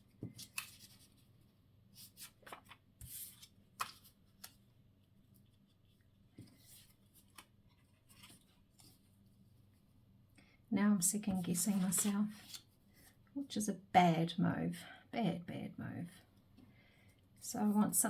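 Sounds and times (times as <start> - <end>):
paper rustling: 0.2 - 1.3, 2.0 - 4.7, 5.4 - 9.1, 11.3 - 12.7.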